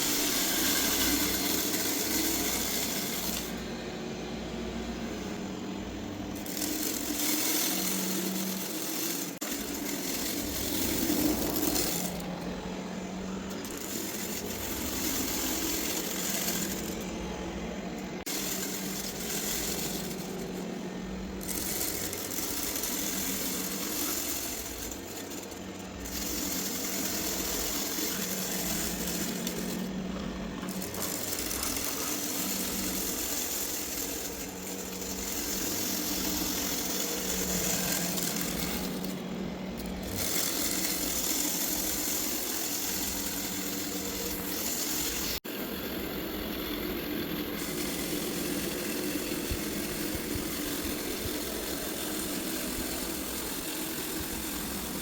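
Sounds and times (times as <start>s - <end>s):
rice grains rattling in vacuum: 0.0s - 55.0s
robot vacuum running: 0.0s - 55.0s.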